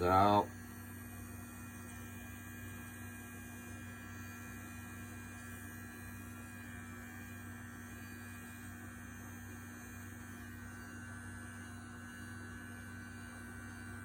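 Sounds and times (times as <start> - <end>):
electric trimmer humming: 0.0 - 14.0.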